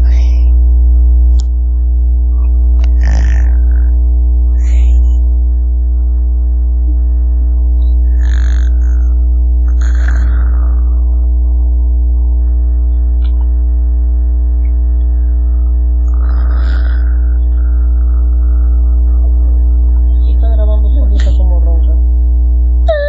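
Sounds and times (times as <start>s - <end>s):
person snoring: 0.0s - 0.6s, 2.8s - 4.0s, 8.0s - 11.1s, 16.1s - 18.9s
low electrical hum: 0.0s - 23.0s.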